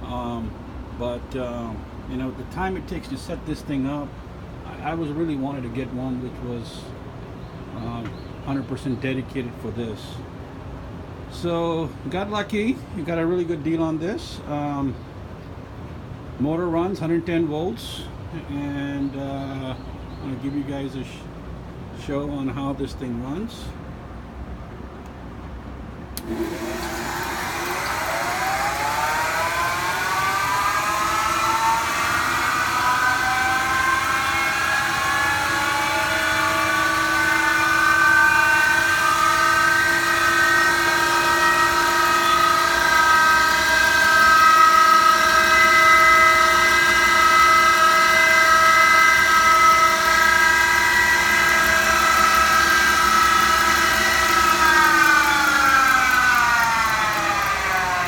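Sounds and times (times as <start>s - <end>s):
electric motor whine: 26.2s - 58.0s.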